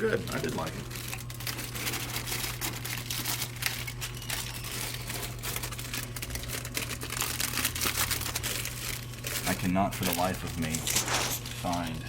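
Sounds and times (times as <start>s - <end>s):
plastic wrappers crinkling: 1.4s - 9.6s, 10.4s - 11.6s.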